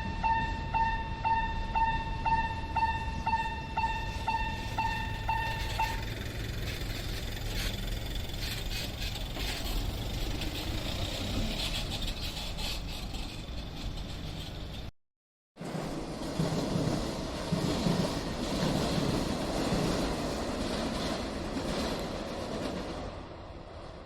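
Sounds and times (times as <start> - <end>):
level crossing alarm dinging: 0.0 - 6.2.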